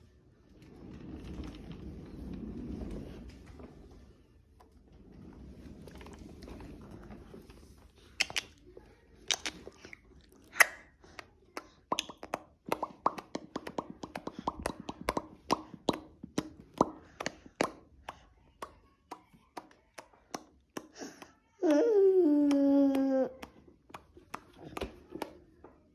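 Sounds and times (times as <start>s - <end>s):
baby mouth clicks and smacks: 8.1s - 8.6s, 9.2s - 21.3s, 22.4s - 25.4s
baby humming: 21.6s - 23.5s.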